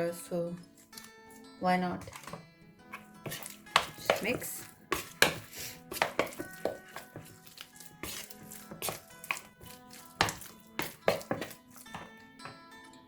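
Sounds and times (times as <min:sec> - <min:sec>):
utensil scraping a bowl: 0:02.0 - 0:12.1.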